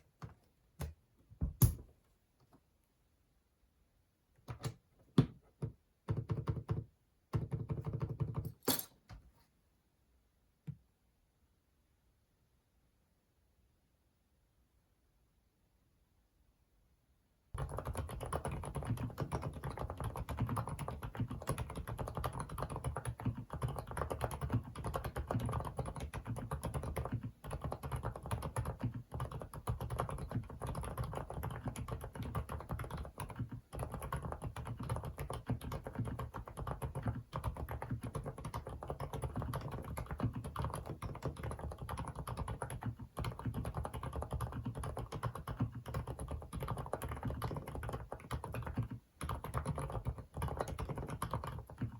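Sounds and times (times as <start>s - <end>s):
fast typing on mechanical keyboard: 6.1s - 8.6s, 17.6s - 51.9s.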